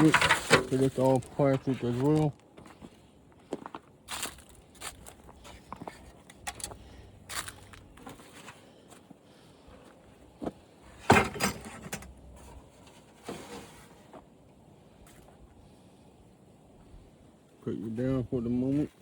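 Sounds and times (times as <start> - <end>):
plastic parts clattering: 0.0 - 2.2, 6.2 - 7.6
plastic scraping: 0.0 - 2.2.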